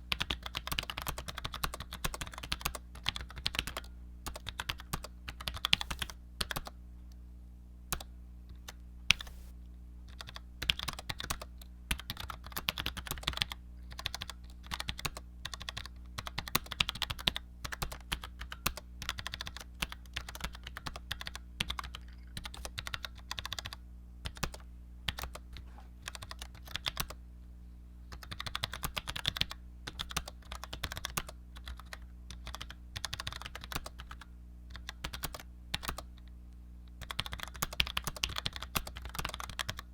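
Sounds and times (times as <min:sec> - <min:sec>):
keyboard keystrokes clicking: 0:37.0 - 0:39.9.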